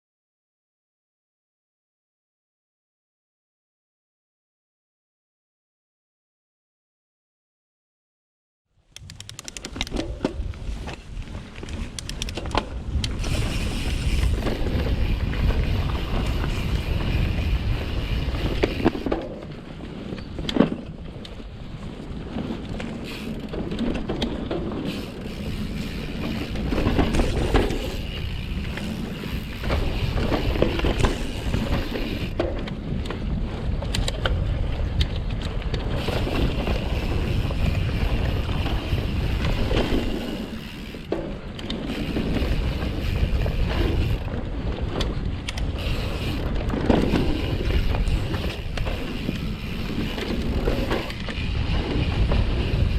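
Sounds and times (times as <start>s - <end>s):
bike tyre noise on dirt: 8.9s - 52.9s
wind rumbling on microphone: 8.9s - 52.9s
bike knocking and rattling: 9.0s - 52.9s.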